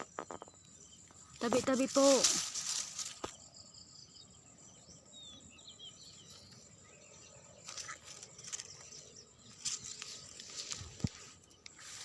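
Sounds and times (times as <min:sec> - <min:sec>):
high insect drone: 0:00.0 - 0:12.0
rustling and crackling: 0:01.4 - 0:03.4, 0:07.6 - 0:12.0
bird chirps: 0:03.1 - 0:12.0.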